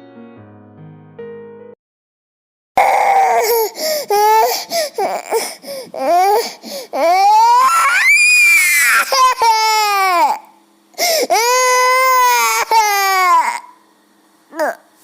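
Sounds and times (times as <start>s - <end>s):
boy crying and sobbing: 2.8s - 10.5s, 11.2s - 13.7s.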